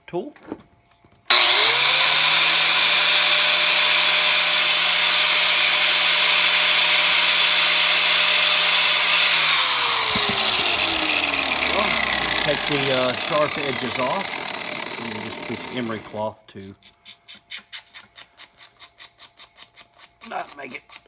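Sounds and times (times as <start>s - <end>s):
angle grinder grinding metal: 1.3s - 16.2s.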